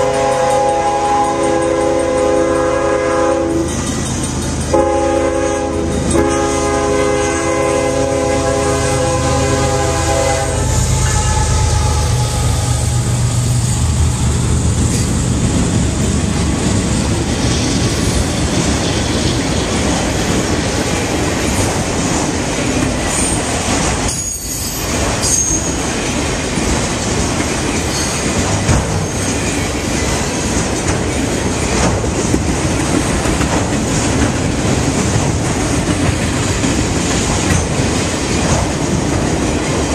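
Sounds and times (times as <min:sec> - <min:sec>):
locomotive air horn: 0:00.0 - 0:03.7, 0:04.7 - 0:13.3
train wheel squeal: 0:00.0 - 0:07.7, 0:09.4 - 0:14.0, 0:17.2 - 0:21.8, 0:22.6 - 0:26.3, 0:27.4 - 0:32.1
freight cars clickety-clack: 0:00.0 - 0:10.7, 0:13.1 - 0:39.9
diesel locomotive rumbling: 0:00.0 - 0:39.9.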